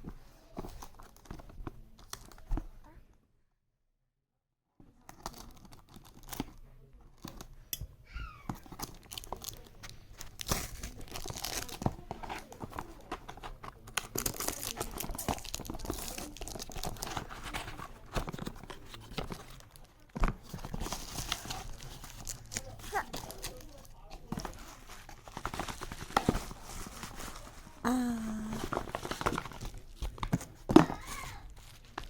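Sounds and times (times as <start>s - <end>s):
packaging being torn and crinkled: 8.6s - 13.0s, 13.7s - 20.0s, 20.9s - 23.9s.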